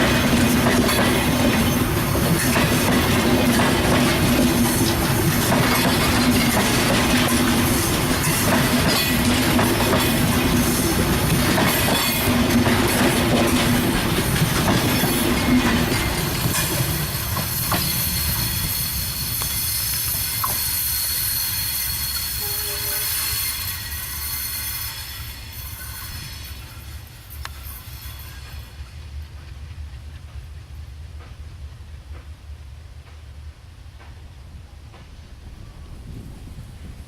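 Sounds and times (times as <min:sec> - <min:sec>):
train wheels rumbling on rails: 0:00.0 - 0:37.0
high wheel squeal: 0:16.3 - 0:28.9.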